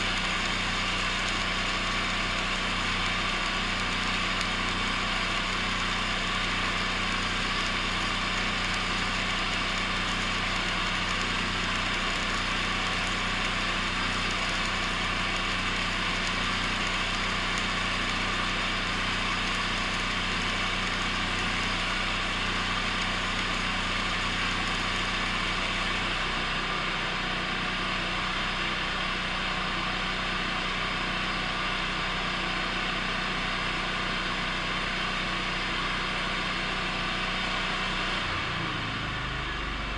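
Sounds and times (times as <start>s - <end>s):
welding arc crackling hiss: 0.0s - 27.5s.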